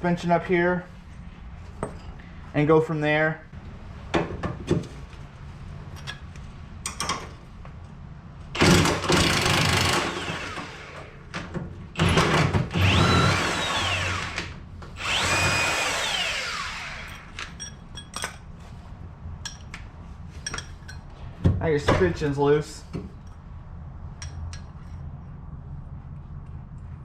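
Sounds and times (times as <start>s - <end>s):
impact wrench whining: 8.6s - 11.3s, 12.0s - 17.6s
tools clicking and knocking: 17.1s - 18.5s, 19.4s - 19.8s, 20.4s - 21.1s.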